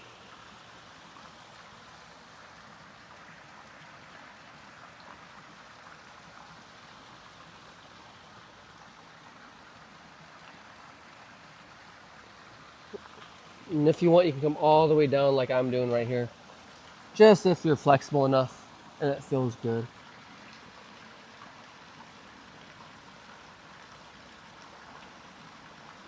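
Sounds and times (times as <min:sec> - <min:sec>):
faint steady hiss: 0:00.0 - 0:26.0.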